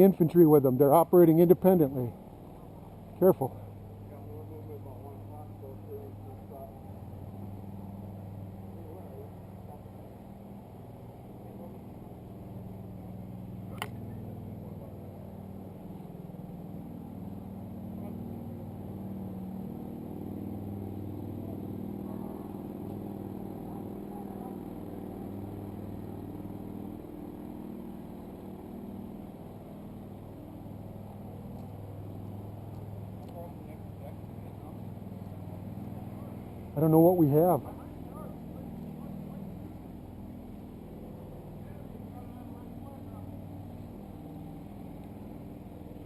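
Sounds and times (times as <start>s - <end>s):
vehicle engine humming: 0.0s - 46.0s
sharp click: 13.7s - 14.0s.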